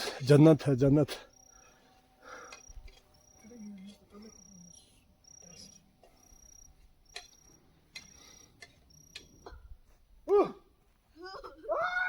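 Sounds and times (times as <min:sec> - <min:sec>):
insect chirping: 0:00.9 - 0:10.0.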